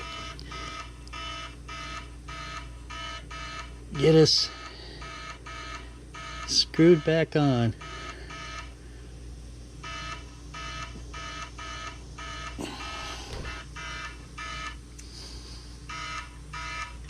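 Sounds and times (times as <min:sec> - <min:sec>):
electronic alarm beeping in pairs: 0:00.0 - 0:08.8, 0:09.8 - 0:12.6, 0:13.2 - 0:14.8, 0:15.9 - 0:17.0.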